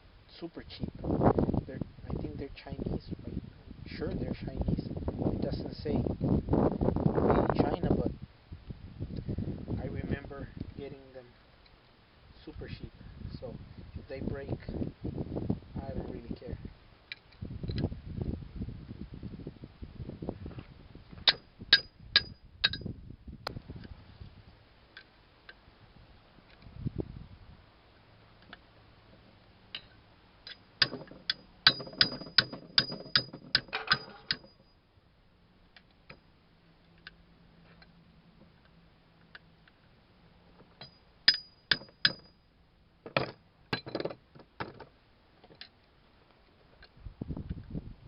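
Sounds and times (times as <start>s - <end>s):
ringing metal strikes on wrench: 21.3s - 22.8s, 30.5s - 34.8s, 40.8s - 42.4s.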